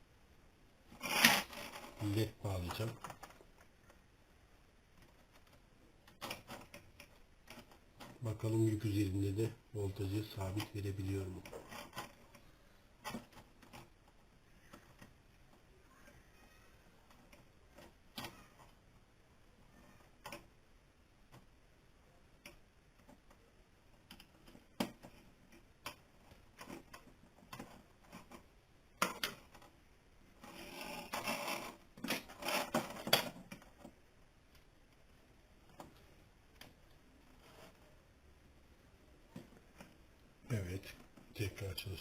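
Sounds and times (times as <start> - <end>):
rustling and scraping: 0.8 - 4.1, 4.9 - 18.9, 22.9 - 34.3, 34.9 - 38.2.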